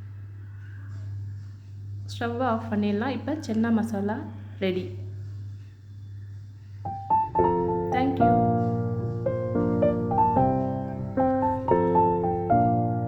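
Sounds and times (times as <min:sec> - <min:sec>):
piano music: 0:06.8 - 0:13.0.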